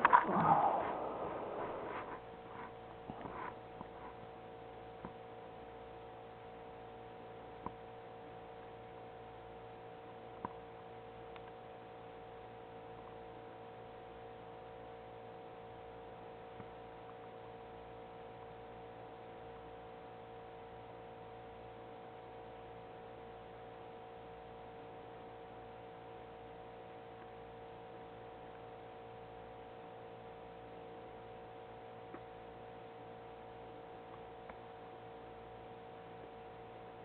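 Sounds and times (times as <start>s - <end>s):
electrical hum: 0.0s - 7.8s.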